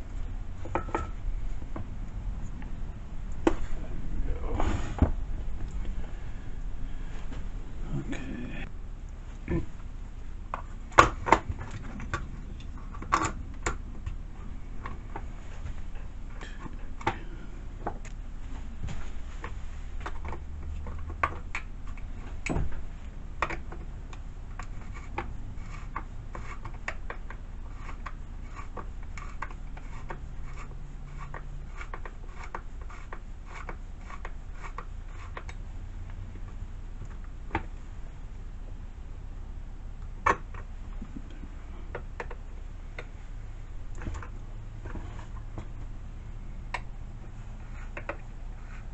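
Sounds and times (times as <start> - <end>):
steady low hum: 0.0 - 48.9
clicks and knocks of hand work: 18.9 - 37.8.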